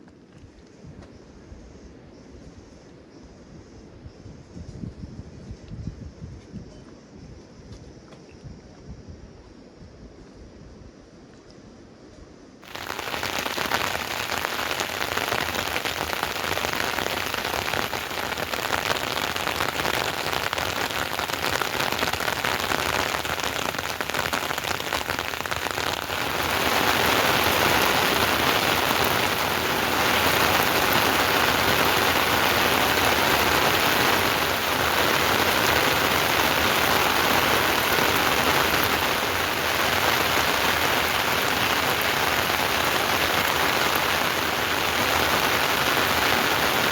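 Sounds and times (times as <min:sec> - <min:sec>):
heavy rain falling: 0:12.6 - 0:46.9.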